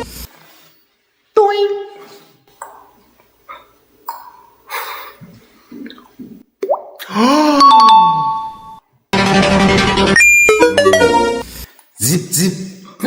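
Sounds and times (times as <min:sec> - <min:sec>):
music: 0:09.2 - 0:11.4.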